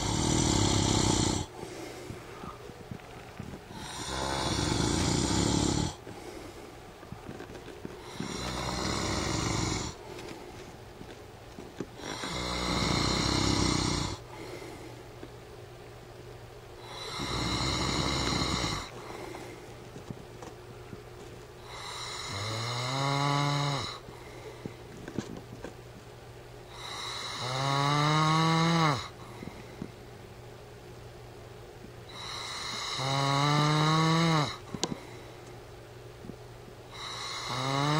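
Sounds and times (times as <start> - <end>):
man snoring: 0.0 - 1.8, 3.7 - 6.1, 8.0 - 10.0, 12.0 - 14.6, 16.8 - 19.3, 21.6 - 24.0, 26.7 - 29.2, 32.1 - 34.6, 36.9 - 37.9.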